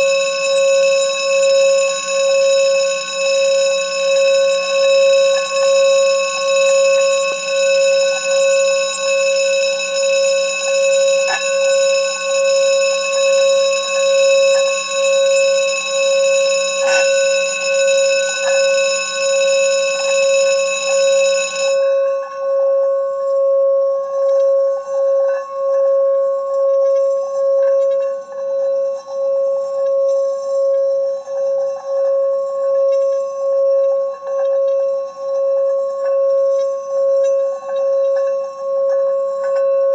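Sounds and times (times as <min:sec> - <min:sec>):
pulsing bell-like ringing tone: 0:00.0 - 0:39.9.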